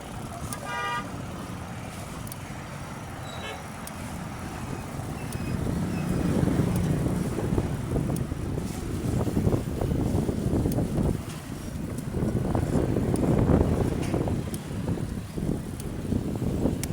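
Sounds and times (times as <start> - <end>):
vehicle passing: 0.0 - 9.9
road traffic rumble: 0.0 - 16.9.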